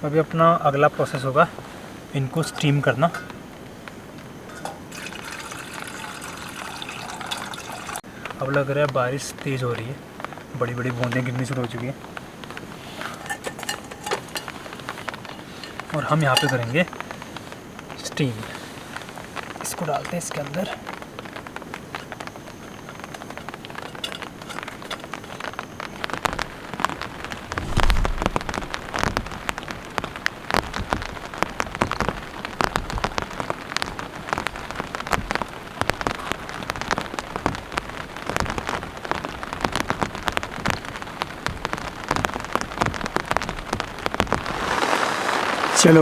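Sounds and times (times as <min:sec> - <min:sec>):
heavy rain pattering: 0:00.0 - 0:46.0
low thump: 0:27.5 - 0:29.3.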